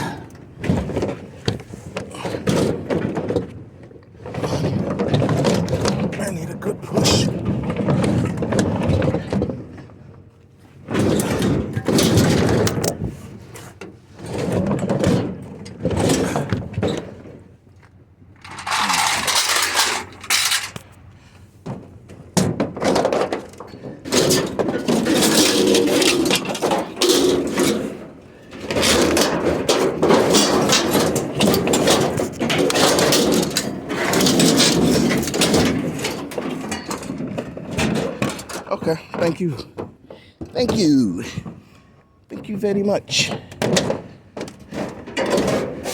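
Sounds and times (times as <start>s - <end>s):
refrigerator scraping and knocking: 21.8s - 41.6s, 42.4s - 45.9s.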